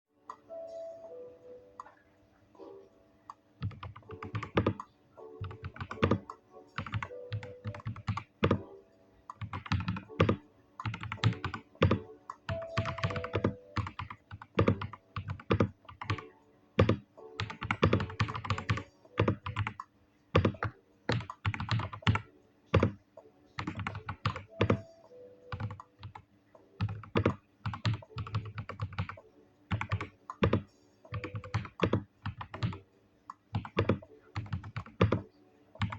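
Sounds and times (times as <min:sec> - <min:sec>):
mechanical keyboard typing: 0:03.6 - 0:08.6, 0:09.3 - 0:23.0, 0:23.6 - 0:24.8, 0:25.5 - 0:32.8, 0:33.5 - 0:35.2.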